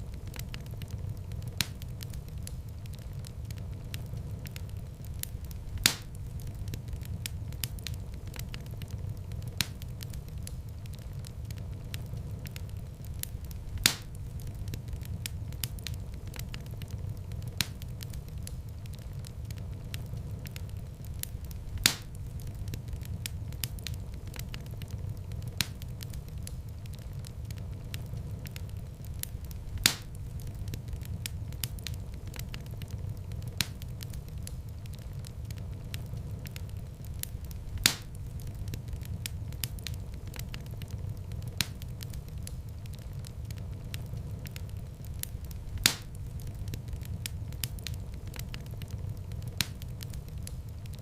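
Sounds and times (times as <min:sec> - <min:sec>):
loud fire pops: 0:00.0 - 0:51.0
low rumble of flames: 0:00.0 - 0:51.0
wood fire crackling: 0:00.0 - 0:51.0.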